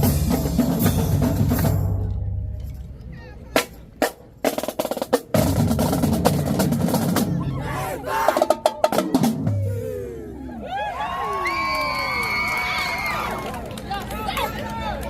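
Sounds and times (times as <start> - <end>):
marching drumline: 0.0 - 2.1, 3.5 - 10.0
crowd voices: 6.3 - 15.0.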